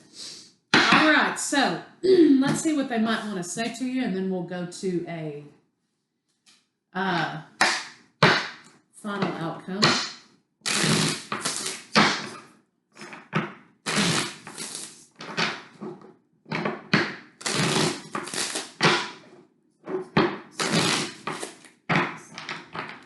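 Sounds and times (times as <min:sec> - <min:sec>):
cards being shuffled: 0:10.7 - 0:12.4, 0:13.9 - 0:15.6, 0:17.4 - 0:19.0, 0:20.6 - 0:21.8.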